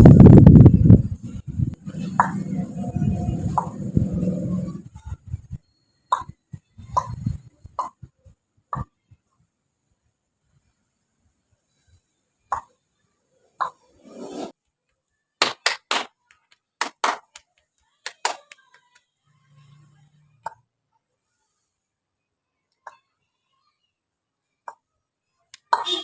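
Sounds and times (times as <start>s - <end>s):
hands slapping skin: 15.4s - 19.0s.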